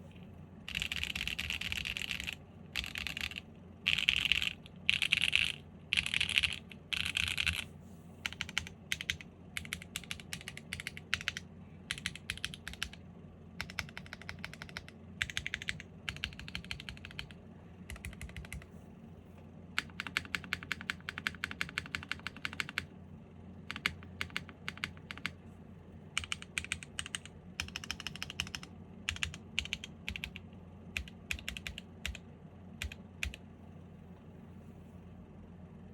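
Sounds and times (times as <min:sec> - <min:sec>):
mechanical keyboard typing: 0:00.7 - 0:07.6, 0:08.2 - 0:13.0, 0:13.6 - 0:18.7, 0:19.8 - 0:22.9, 0:23.7 - 0:25.4, 0:26.2 - 0:32.2, 0:32.8 - 0:33.4.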